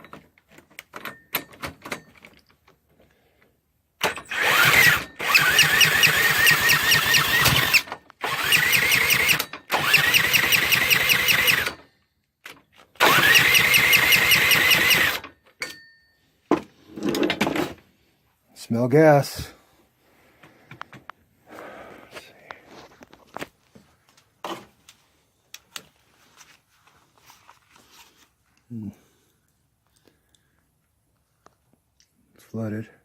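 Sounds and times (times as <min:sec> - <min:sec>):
small engine cranking: 0:04.0 - 0:11.9, 0:12.9 - 0:15.4.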